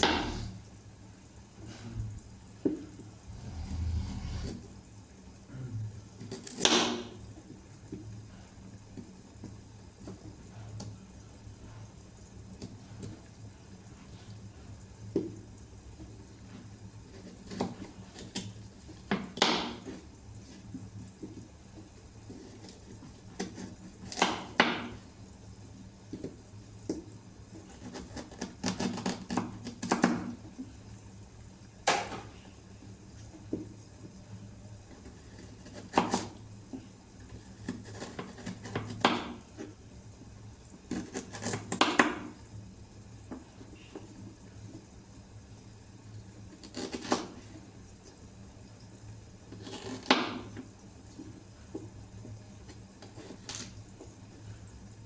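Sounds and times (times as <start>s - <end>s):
low steady hum: 0.0s - 6.2s.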